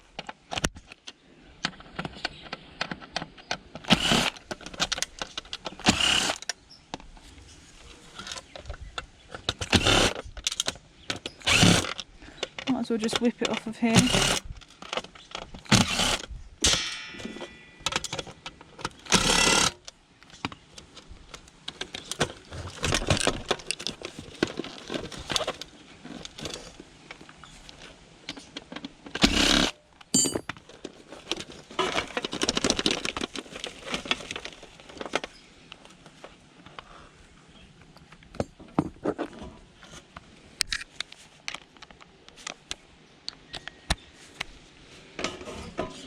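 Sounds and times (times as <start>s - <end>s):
loud clatter or power tool: 3.9s - 4.4s, 5.8s - 6.4s, 9.6s - 10.2s, 11.4s - 12.0s, 14.0s - 14.5s, 15.6s - 16.8s, 19.1s - 19.8s, 29.2s - 29.7s
metal parts and tools clinking: 16.6s - 19.7s, 29.4s - 30.6s.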